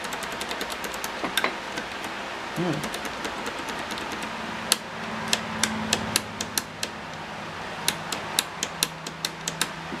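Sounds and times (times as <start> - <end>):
steady low hum: 0.0 - 10.0
sharp clicks and taps: 2.8 - 7.2, 7.8 - 10.0.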